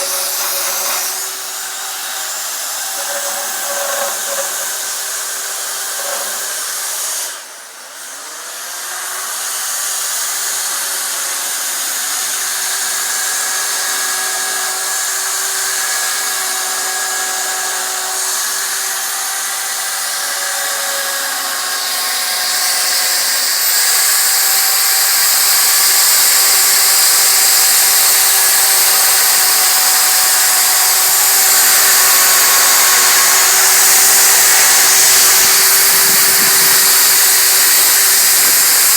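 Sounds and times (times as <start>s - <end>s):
chainsaw cutting wood: 0.0s - 7.4s, 22.9s - 38.9s.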